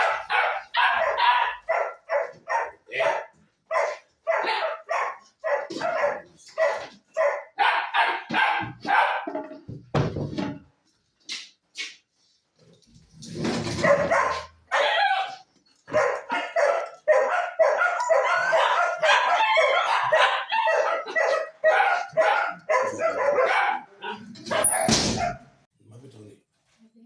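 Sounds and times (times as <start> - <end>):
dog barking: 0.0 - 9.3, 13.6 - 25.5.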